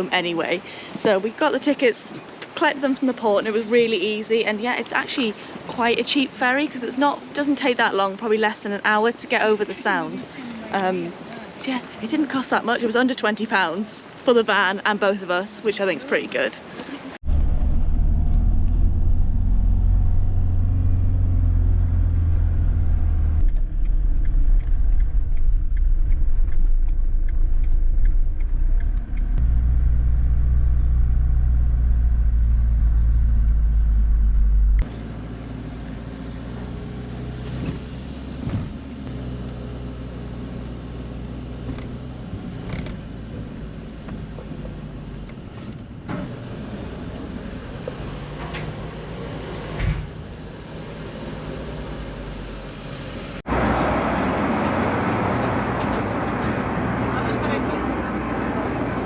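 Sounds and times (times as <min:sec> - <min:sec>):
low engine rumble: 0:17.1 - 0:59.0.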